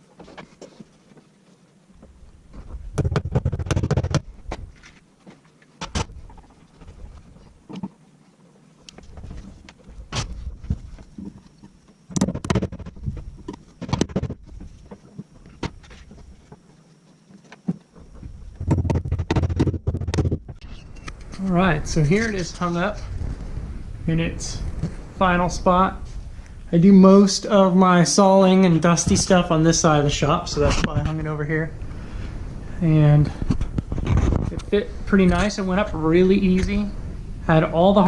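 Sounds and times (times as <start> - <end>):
knocks and clunks: 2.0 - 4.8, 12.1 - 16.6, 17.6 - 20.8.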